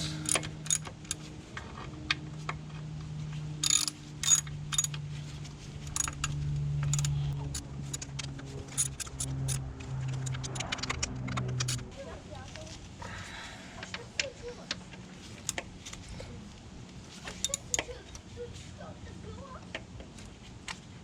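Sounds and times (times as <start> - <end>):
wrench clicking on metal: 0.0 - 1.3, 3.6 - 5.0, 5.9 - 8.1, 8.7 - 10.8, 11.6 - 11.8, 17.3 - 17.9.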